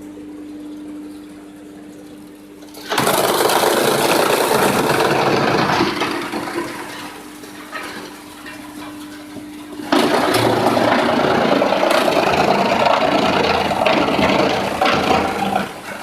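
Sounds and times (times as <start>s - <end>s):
wood chipper humming: 0.0s - 16.0s
rough chipping noise: 9.9s - 15.9s.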